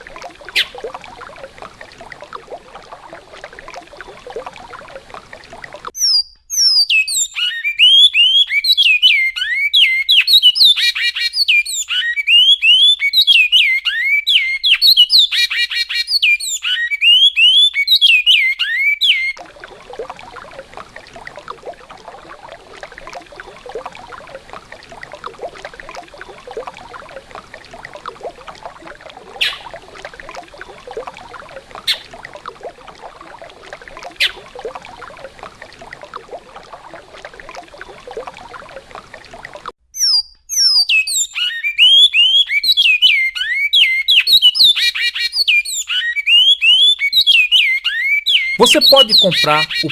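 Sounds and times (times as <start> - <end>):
river water running: 0.0 - 5.9, 19.4 - 39.7
finch singing whistled phrases: 6.0 - 14.7, 40.0 - 49.9.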